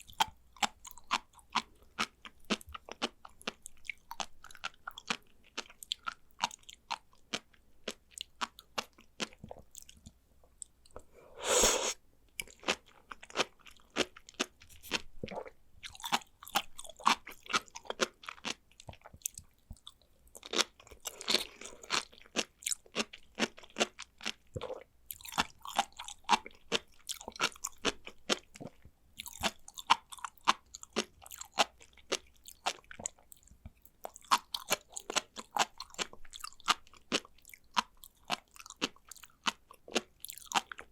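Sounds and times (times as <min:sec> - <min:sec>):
chewing with crisp pops: 0:00.0 - 0:11.1, 0:12.3 - 0:40.9.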